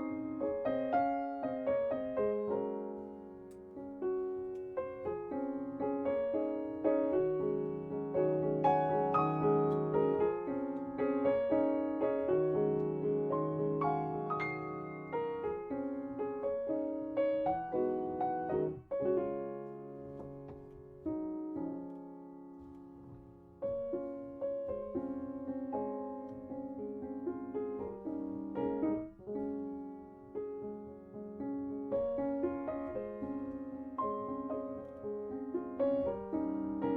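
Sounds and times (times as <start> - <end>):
slow solo piano: 0.0 - 36.9.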